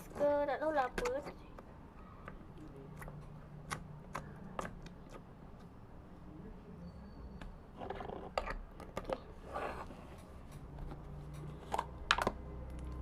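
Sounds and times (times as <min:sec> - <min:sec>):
slime squelching and popping: 0:02.2 - 0:05.7.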